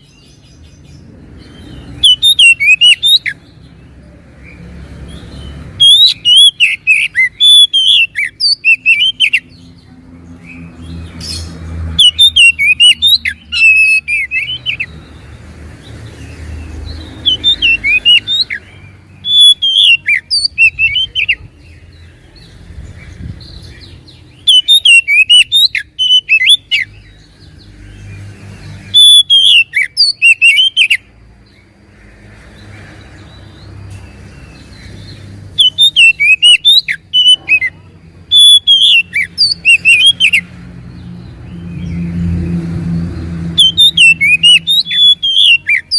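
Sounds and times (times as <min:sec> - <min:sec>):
bird singing whistled phrases: 0:02.0 - 0:03.4, 0:05.8 - 0:09.5, 0:12.0 - 0:14.9, 0:17.2 - 0:21.4, 0:24.4 - 0:26.9, 0:28.9 - 0:31.0, 0:35.5 - 0:40.4, 0:43.6 - 0:45.9.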